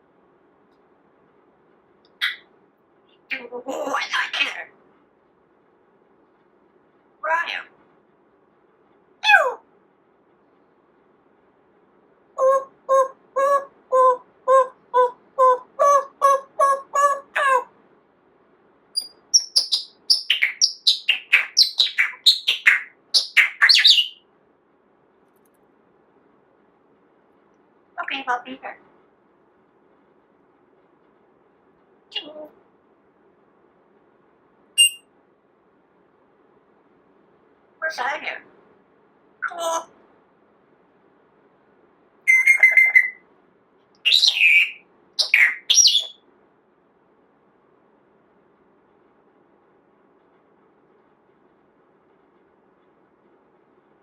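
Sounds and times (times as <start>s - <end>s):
parrot whistling: 34.8s - 35.0s, 42.3s - 43.2s, 44.1s - 46.1s.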